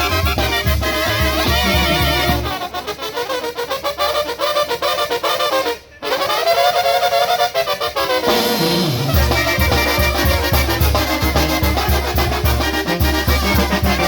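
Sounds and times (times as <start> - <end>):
bass beat: 0.0 - 2.6, 9.2 - 14.0
brass band playing: 0.0 - 14.0.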